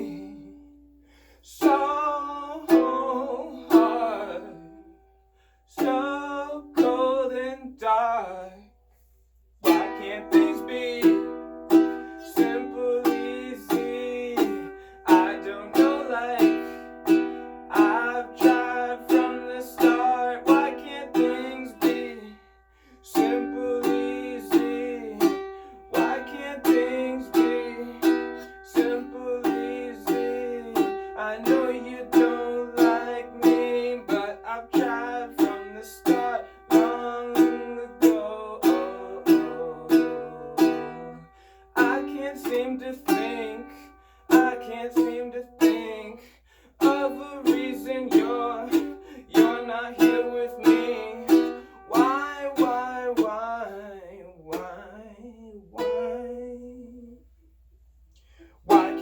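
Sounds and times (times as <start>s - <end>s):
ukulele strumming chords: 0.0s - 5.1s, 5.7s - 8.2s, 9.6s - 57.2s, 58.3s - 59.0s.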